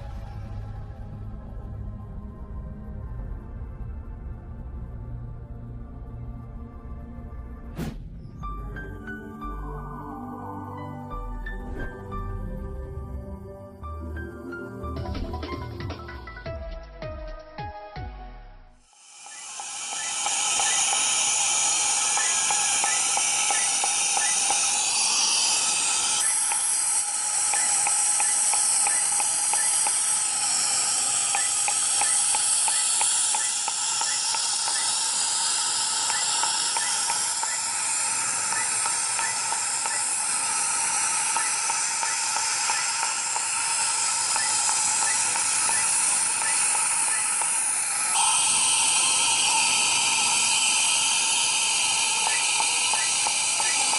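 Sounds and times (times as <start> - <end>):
loud hiss with tones: 18.8 - 53.9
faint regular ticking: 19.2 - 53.9.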